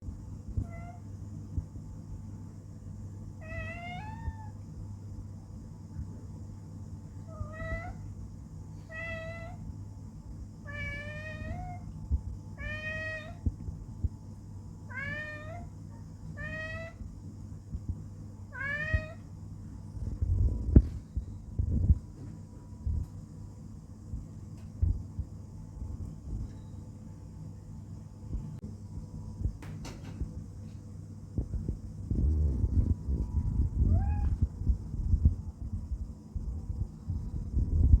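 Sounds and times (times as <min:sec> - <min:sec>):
steady low hum: 0:00.0 - 0:38.0
cat meowing: 0:00.6 - 0:01.0, 0:03.4 - 0:04.6, 0:07.3 - 0:08.0, 0:08.9 - 0:09.6, 0:10.7 - 0:11.9, 0:12.6 - 0:13.4, 0:14.9 - 0:15.7, 0:16.4 - 0:17.0, 0:18.5 - 0:19.2, 0:33.9 - 0:34.4.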